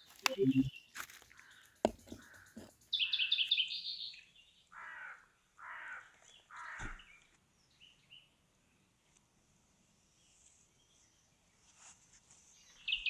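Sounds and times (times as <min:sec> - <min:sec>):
high bird chirps: 0:00.0 - 0:00.9
harsh caw-like bird calls: 0:04.7 - 0:07.2.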